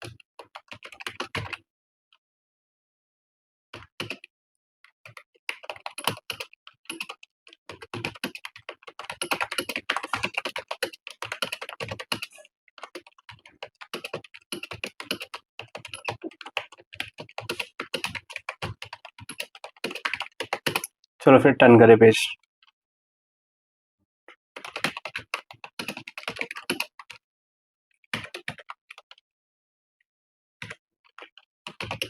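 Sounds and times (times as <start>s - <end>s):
fast typing on keyboard: 0.0s - 1.6s, 3.8s - 4.3s, 5.0s - 21.0s, 24.6s - 27.2s, 28.1s - 29.2s, 30.6s - 32.0s.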